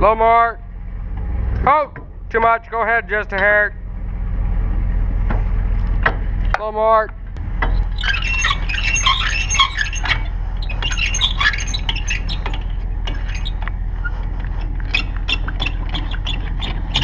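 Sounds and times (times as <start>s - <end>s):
vehicle engine idling: 0.0s - 17.0s
short high squeaks and chirps: 7.8s - 13.6s, 14.8s - 17.0s.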